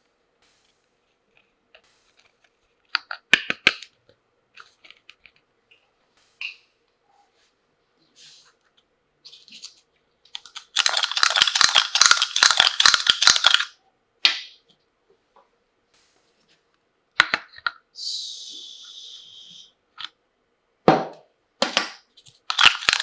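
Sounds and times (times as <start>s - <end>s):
plastic toy pieces clicking: 10.3s - 13.8s, 22.3s - 23.0s.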